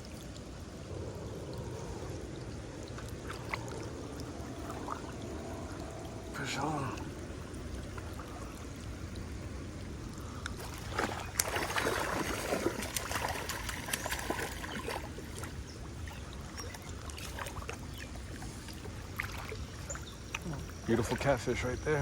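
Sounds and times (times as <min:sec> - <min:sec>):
low rumble: 0:00.0 - 0:12.9
water trickling and splashing: 0:00.0 - 0:22.0.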